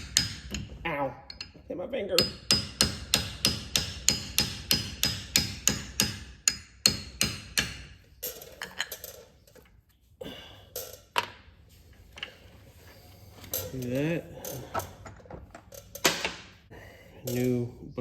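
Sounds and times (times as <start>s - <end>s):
hammer striking metal: 0.0s - 0.7s, 2.2s - 8.0s.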